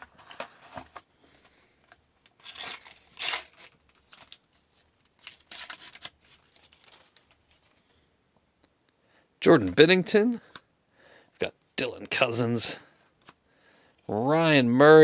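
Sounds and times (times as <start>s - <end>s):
paper rustling and sliding: 0.0s - 1.6s, 2.3s - 7.9s.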